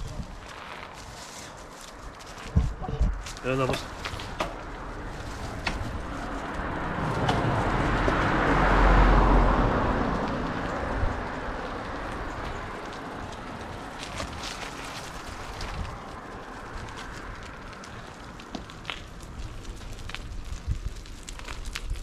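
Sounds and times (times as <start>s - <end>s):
vehicle passing by: 3.5s - 18.6s.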